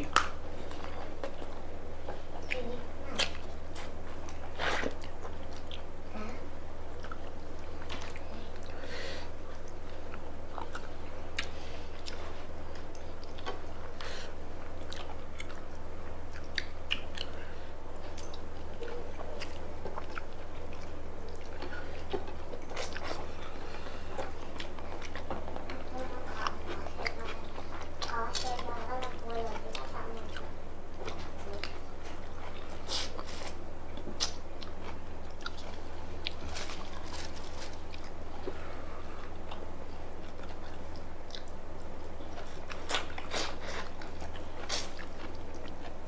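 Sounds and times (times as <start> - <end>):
people chewing food: 0.0 - 46.0
wet mouth smacks: 32.9 - 34.4.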